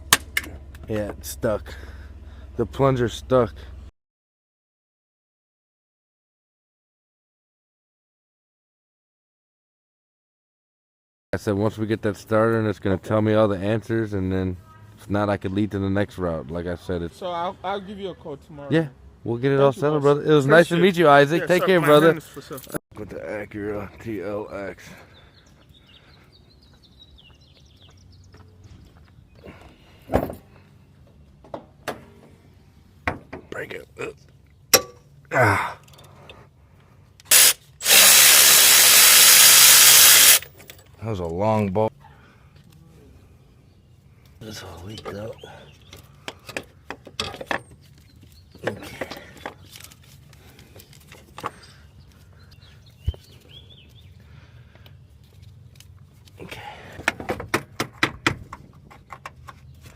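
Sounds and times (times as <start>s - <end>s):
bird chirps: 25.0s - 29.6s, 51.5s - 54.3s
hand tools clicking and knocking: 34.7s - 35.1s, 45.9s - 49.9s, 56.9s - 59.9s.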